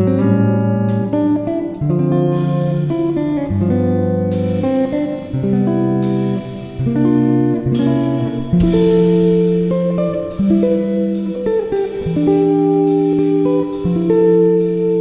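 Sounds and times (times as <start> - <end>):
plucked guitar music: 0.0 - 15.0.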